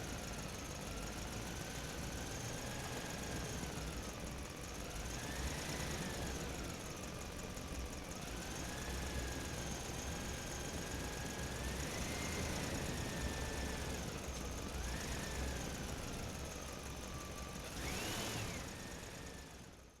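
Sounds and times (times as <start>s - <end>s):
small electric motors whining: 11.1s - 19.7s.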